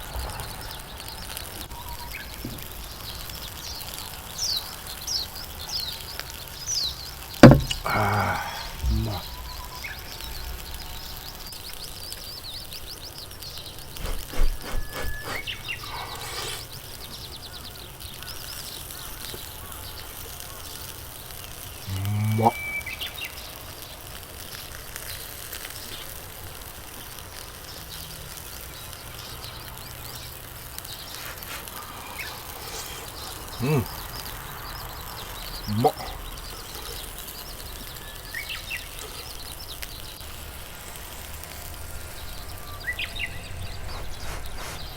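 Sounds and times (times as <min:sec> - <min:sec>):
skewers sizzling over charcoal: 0:00.0 - 0:44.9
faint bird chirps: 0:00.4 - 0:24.1, 0:27.4 - 0:40.2
light knocks: 0:07.4 - 0:07.9
short low voice: 0:07.6 - 0:09.4, 0:21.9 - 0:22.6, 0:33.0 - 0:33.9, 0:35.7 - 0:36.2.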